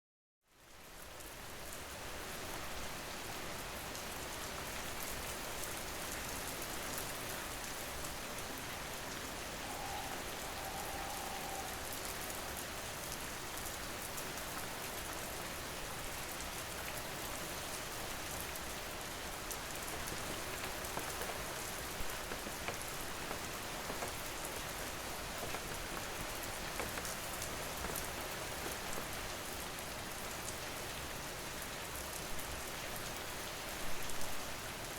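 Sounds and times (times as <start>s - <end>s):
steady rainfall: 0.5s - 34.9s
raindrop hits: 19.6s - 29.6s.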